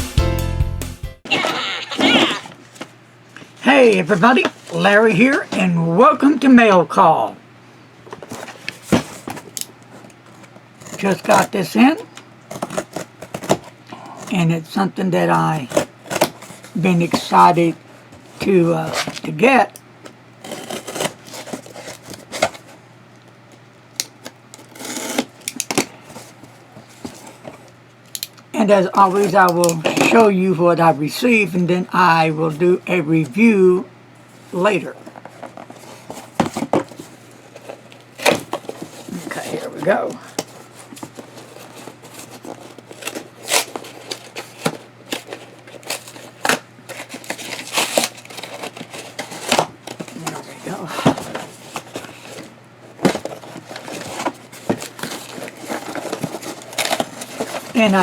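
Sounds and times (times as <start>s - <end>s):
package rustle: 20.4s - 22.8s, 34.9s - 58.0s.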